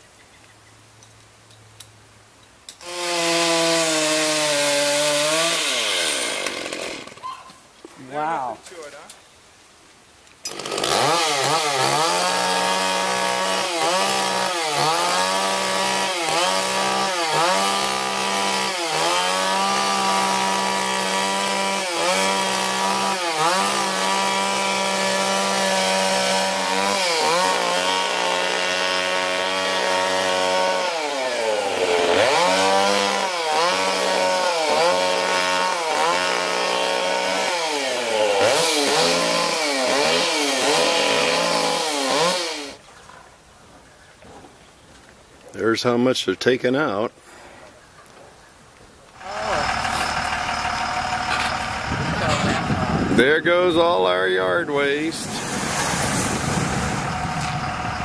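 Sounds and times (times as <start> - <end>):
chainsaw cutting wood: 2.8 - 7.3, 10.4 - 42.8, 49.2 - 58.0.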